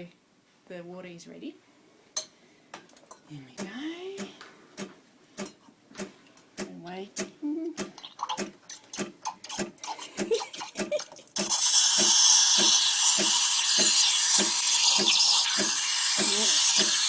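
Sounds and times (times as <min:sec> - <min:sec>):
espresso machine pulsing: 0:11.4 - 0:17.0
steam wand hissing into milk: 0:11.4 - 0:17.0.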